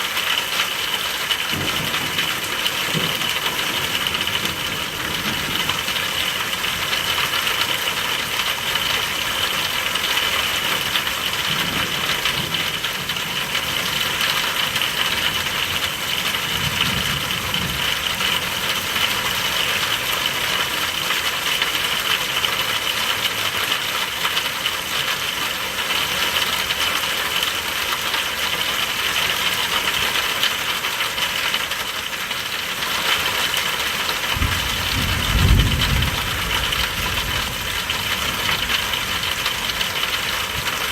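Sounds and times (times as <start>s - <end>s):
steady rain falling: 0.0s - 40.9s
distant thunder rumbles: 1.5s - 7.2s, 11.1s - 18.6s, 34.3s - 40.9s.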